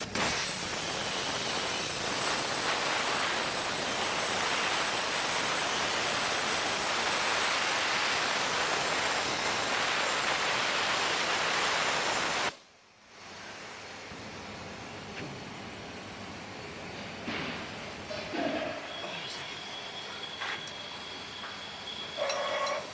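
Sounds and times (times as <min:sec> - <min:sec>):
plasma torch cutting with hiss: 0:00.0 - 0:12.5, 0:17.2 - 0:22.9.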